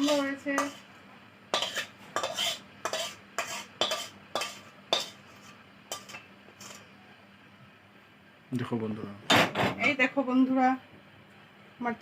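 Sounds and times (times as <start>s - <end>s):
spoon scraping in cooking pot: 0.0s - 0.9s, 1.5s - 6.9s.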